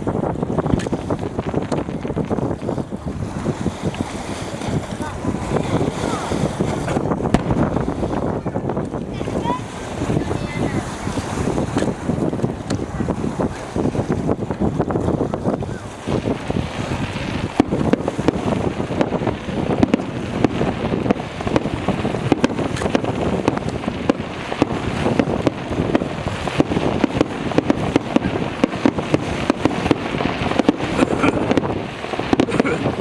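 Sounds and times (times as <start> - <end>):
fireworks cracking and banging: 0.0 - 33.0
wind buffeting microphone: 0.0 - 33.0
low rumble: 6.8 - 9.3.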